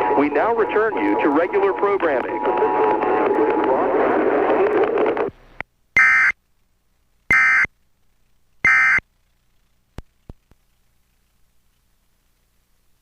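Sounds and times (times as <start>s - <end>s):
garbled broadcast audio: 0.0s - 6.4s.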